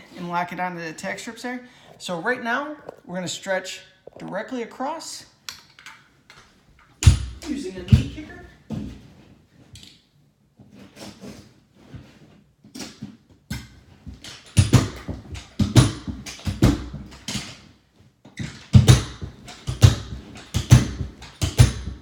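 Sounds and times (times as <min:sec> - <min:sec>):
carpet knee kicker thumps: 0:07.0 - 0:09.0, 0:13.5 - 0:17.4, 0:18.4 - 0:22.0.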